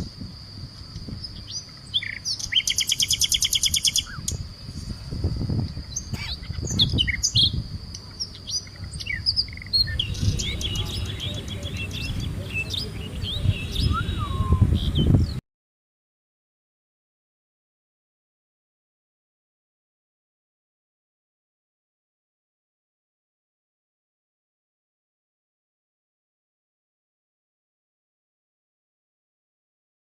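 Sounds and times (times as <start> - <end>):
thin steady high tone: 0.0 - 15.3
bird trill: 0.8 - 15.4
small birds chirping: 0.8 - 15.4.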